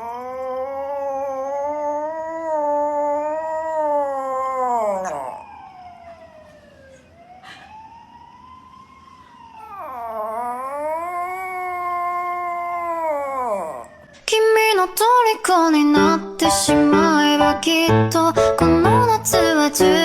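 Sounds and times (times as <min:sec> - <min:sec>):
dog howling: 0:00.0 - 0:05.8, 0:09.6 - 0:14.1.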